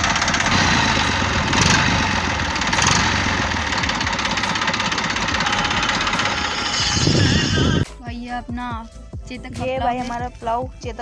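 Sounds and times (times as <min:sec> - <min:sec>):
tractor engine chugging with whistle: 0:00.0 - 0:07.8.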